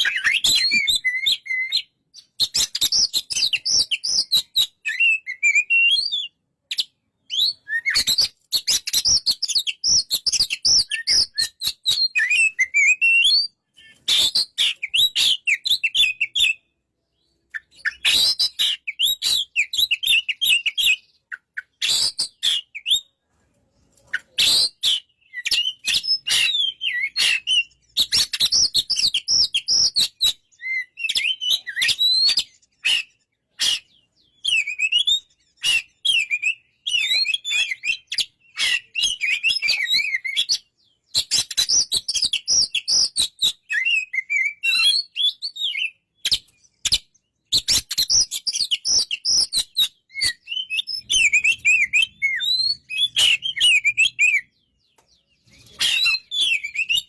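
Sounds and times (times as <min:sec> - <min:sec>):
bird singing whistled phrases: 0:00.0 - 0:23.1, 0:24.2 - 0:57.0.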